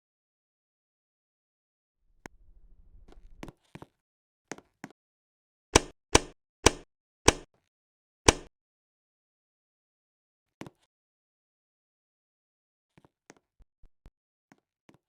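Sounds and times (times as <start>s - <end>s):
ceiling fan knocking: 5.8s - 7.4s, 8.3s - 8.5s.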